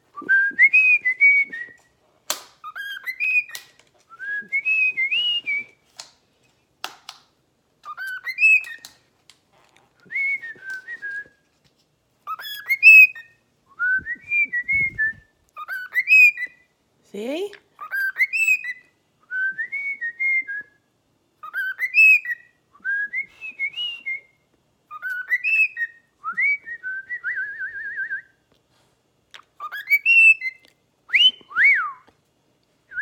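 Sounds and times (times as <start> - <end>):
cockatiel whistling a tune: 0.2 - 1.9, 2.6 - 5.8, 7.8 - 8.9, 12.2 - 16.6, 17.8 - 20.8, 21.4 - 28.4, 29.6 - 32.1.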